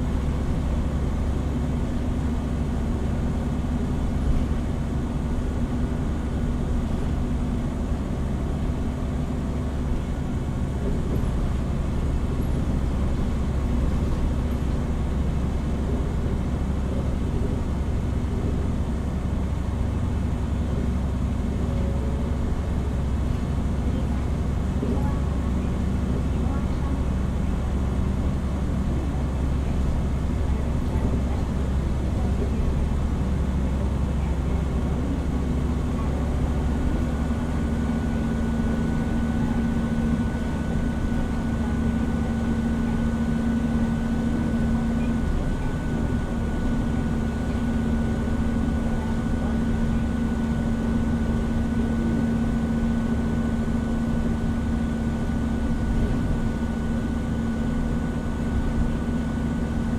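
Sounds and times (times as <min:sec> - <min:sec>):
road rumble: 0:00.0 - 0:43.0
bus engine drone: 0:00.0 - 0:59.9.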